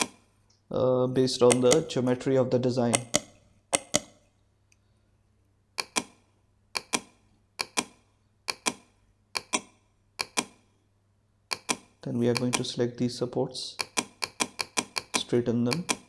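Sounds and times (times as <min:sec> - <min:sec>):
computer mouse clicking: 0:00.0 - 0:00.2, 0:01.4 - 0:01.9, 0:02.9 - 0:04.2, 0:05.8 - 0:06.2, 0:06.8 - 0:10.6, 0:11.5 - 0:12.7, 0:13.8 - 0:16.0.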